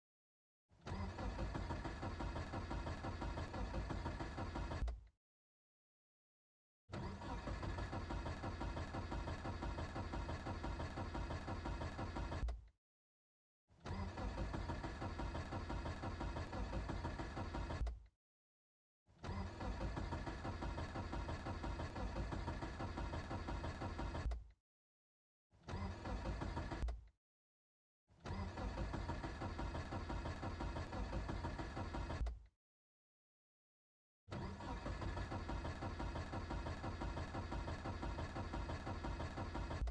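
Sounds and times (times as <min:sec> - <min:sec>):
car starter cranking engine: 0:00.8 - 0:05.1, 0:06.9 - 0:12.6, 0:13.8 - 0:18.0, 0:19.2 - 0:24.4, 0:25.6 - 0:27.1, 0:28.2 - 0:32.5, 0:34.3 - 0:39.9.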